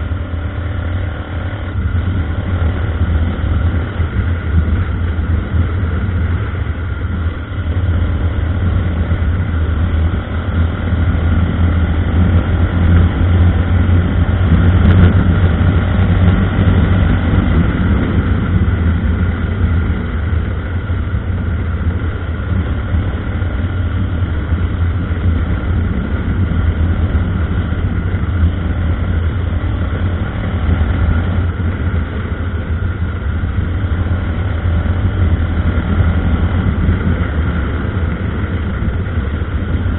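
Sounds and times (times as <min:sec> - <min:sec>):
motorcycle engine droning: 0:00.0 - 0:39.9.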